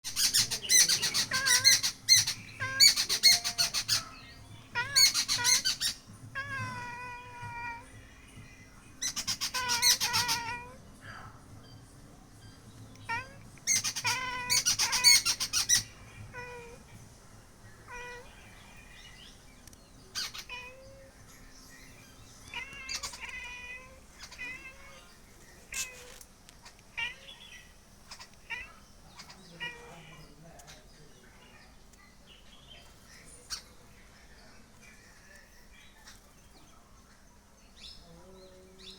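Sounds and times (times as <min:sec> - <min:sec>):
downward-bending bird calls: 0:00.0 - 0:08.0, 0:09.0 - 0:10.7, 0:13.0 - 0:16.8, 0:17.7 - 0:30.9
birds trilling chatter: 0:00.0 - 0:38.9
faint bird chirps: 0:00.0 - 0:38.9.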